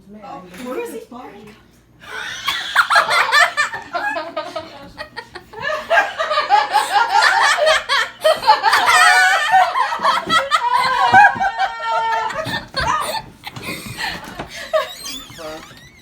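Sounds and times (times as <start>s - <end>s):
high drawn-out laugh: 2.0s - 15.2s
people laughing loudly: 2.0s - 15.2s.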